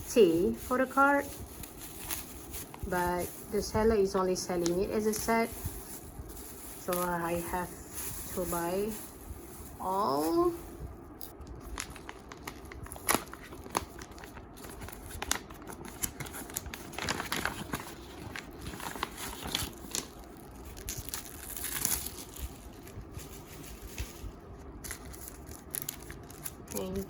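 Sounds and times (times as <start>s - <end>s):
packaging crinkling and rustling: 0.0s - 27.0s
packaging tearing: 11.6s - 22.9s, 24.8s - 27.0s.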